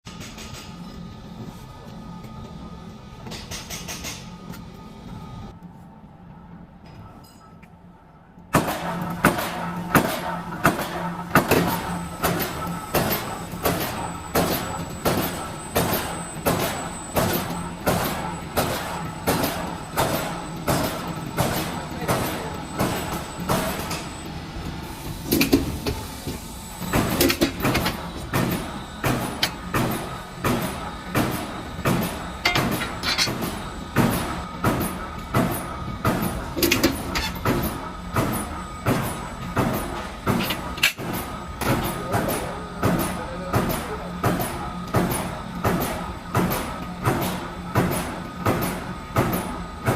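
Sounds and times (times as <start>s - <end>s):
machine hum: 0.1s - 49.9s
press striking: 26.8s - 49.9s.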